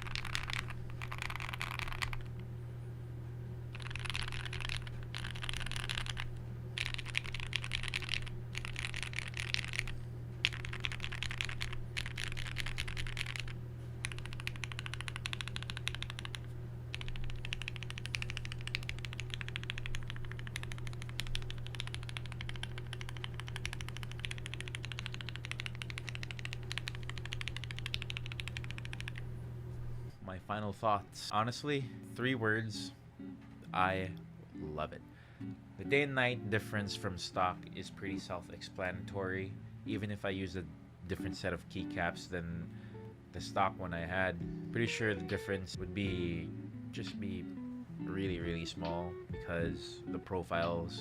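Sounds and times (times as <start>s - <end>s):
mechanical keyboard typing: 0.0s - 2.3s, 3.7s - 29.2s.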